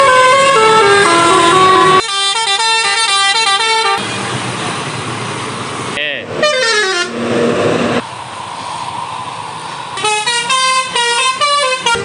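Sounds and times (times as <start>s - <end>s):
multi-tone bus horn melody: 0.0s - 4.4s, 6.4s - 7.9s, 10.0s - 12.0s
steady rush of noise: 7.2s - 10.0s.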